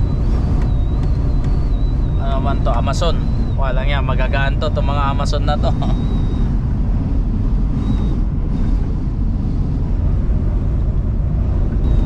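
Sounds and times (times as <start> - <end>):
high wind whistle: 0.0 - 12.0
road noise: 0.0 - 12.0
truck engine rumble: 0.0 - 12.0
wind buffeting: 0.0 - 12.0.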